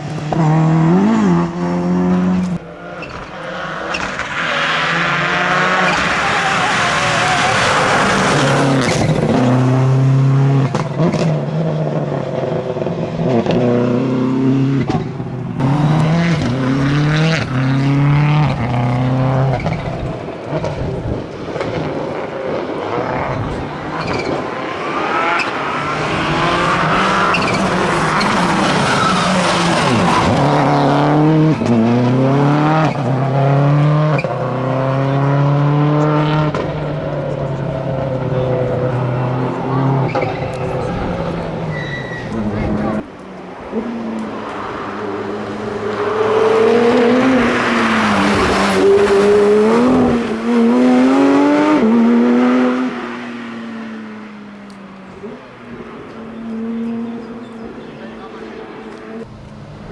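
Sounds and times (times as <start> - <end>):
rally car engines revving through gears: 0.0 - 59.9.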